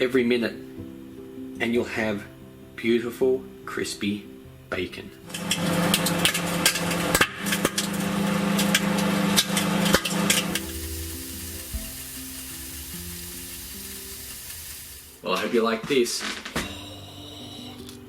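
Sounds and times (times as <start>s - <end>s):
microwave humming: 5.2s - 15.3s, 16.6s - 18.0s
bacon crackling: 5.3s - 15.4s.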